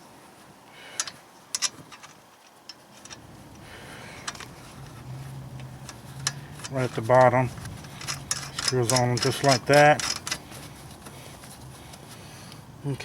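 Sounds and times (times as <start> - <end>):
low steady hum: 0.0 - 13.0
light metallic clicks: 4.2 - 10.5.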